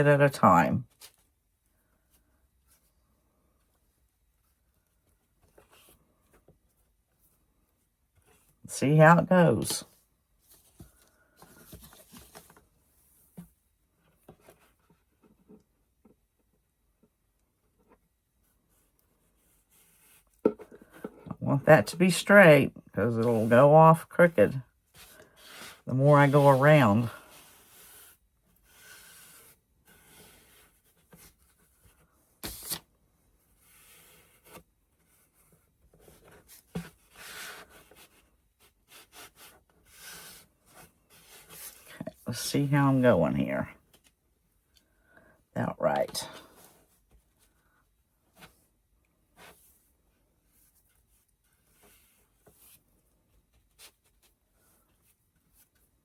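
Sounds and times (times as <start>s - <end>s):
faint brush scratching: 24.9s - 32.0s.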